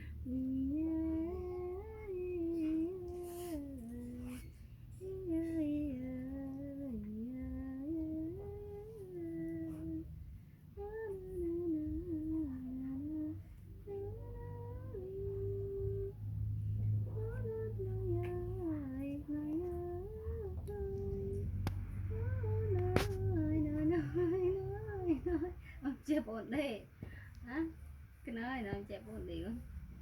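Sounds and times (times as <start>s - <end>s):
person humming a tune: 0.0s - 10.2s, 16.9s - 25.6s.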